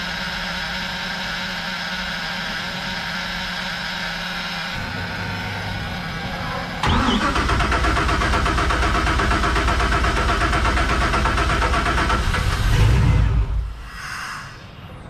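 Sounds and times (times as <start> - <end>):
boat engine cranking on starter: 6.8 - 13.3.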